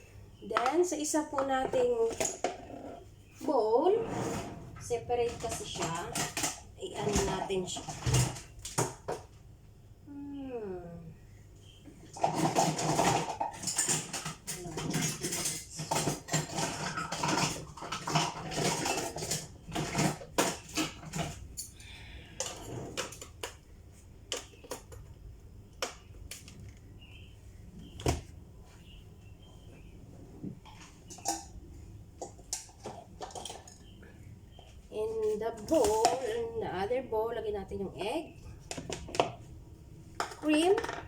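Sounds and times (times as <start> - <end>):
kitchen bowls and utensils clattering: 0.5 - 3.1, 3.8 - 9.3, 12.0 - 23.6, 30.5 - 31.6, 32.2 - 36.6, 40.2 - 41.0.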